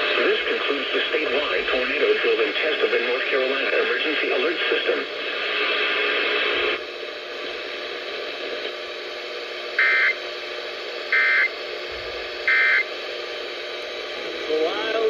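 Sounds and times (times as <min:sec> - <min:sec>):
faint radio hiss: 0:00.0 - 0:15.0.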